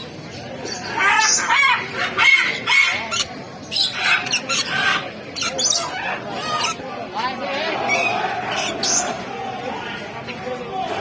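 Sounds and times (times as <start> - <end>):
birds calling: 0.6 - 7.0, 7.8 - 9.2.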